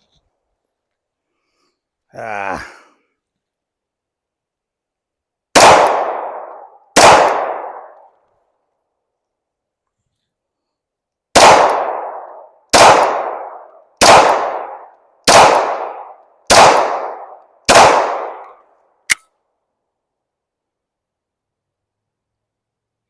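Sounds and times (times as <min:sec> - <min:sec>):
pistol shots with echo: 0:05.5 - 0:08.1, 0:11.3 - 0:18.6
sharp click: 0:18.4 - 0:19.4.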